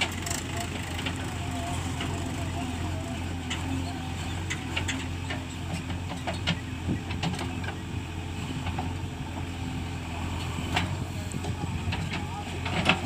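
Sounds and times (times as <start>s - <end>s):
diesel engine running: 0.0s - 13.0s
sharp clanks and knocks: 4.4s - 7.8s.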